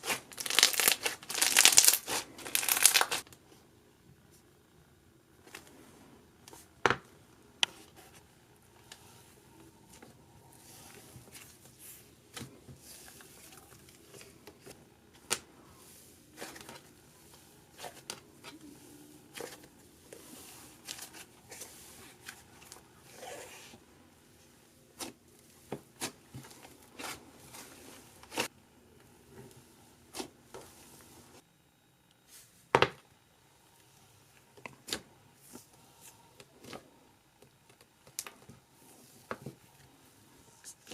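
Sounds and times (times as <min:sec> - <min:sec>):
slime being squished: 0:00.0 - 0:03.2.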